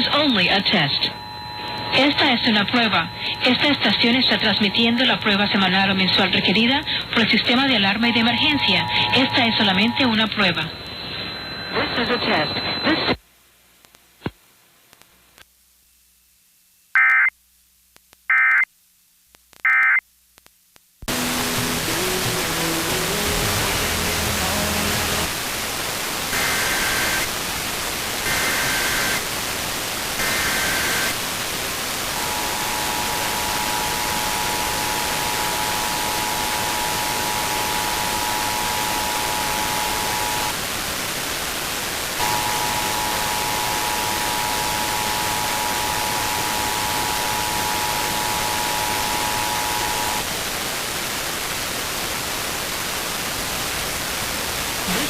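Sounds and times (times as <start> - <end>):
static hiss: 0.0 - 55.0
warbling data bursts: 42.2 - 50.3.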